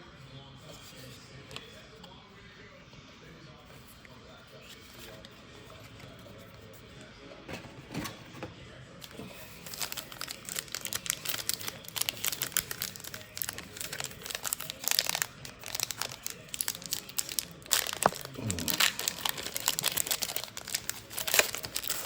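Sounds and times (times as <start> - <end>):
wrapper crinkling and tearing: 9.0 - 22.0.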